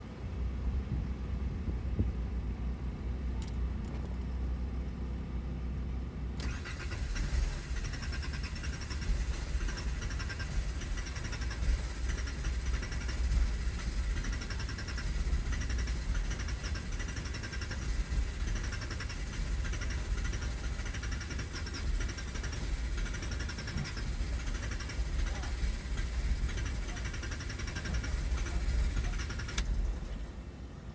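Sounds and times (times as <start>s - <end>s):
low rumble: 0.0s - 30.9s
starter motor cranking engine: 6.4s - 30.4s.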